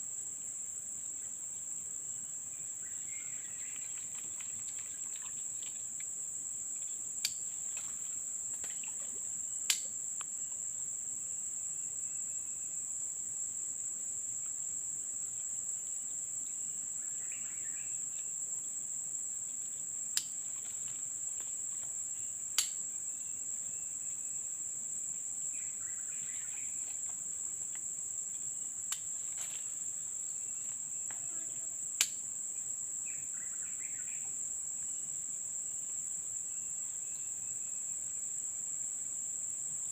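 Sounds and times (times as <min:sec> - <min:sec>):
faint chirps: 0:25.5 - 0:27.2.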